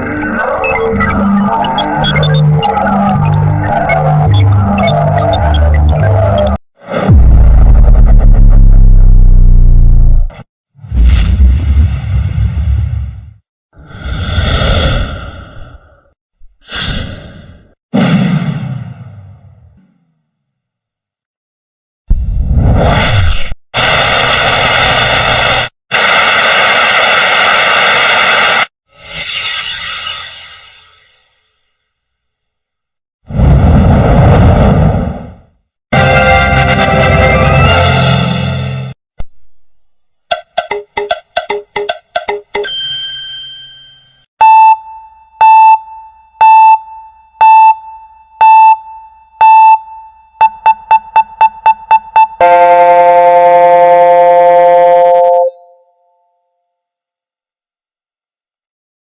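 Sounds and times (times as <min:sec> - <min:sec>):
electronic beeping: 0:00.0 - 0:06.6
harsh steady noise: 0:23.8 - 0:28.7.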